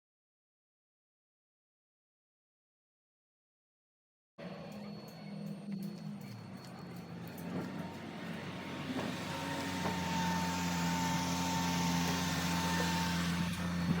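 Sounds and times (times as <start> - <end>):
machine hum with held tones: 4.4 - 14.0.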